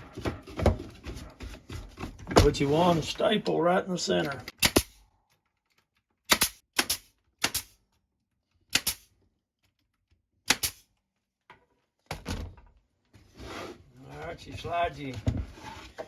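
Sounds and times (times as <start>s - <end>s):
staple gun firing into wood: 4.5s - 5.0s, 6.3s - 7.8s, 8.7s - 9.1s, 10.5s - 10.8s.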